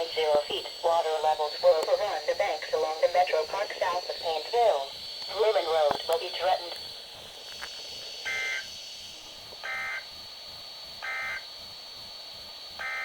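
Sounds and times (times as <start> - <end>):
buzzy two-tone digital bursts: 8.2 - 8.7, 11.0 - 11.4.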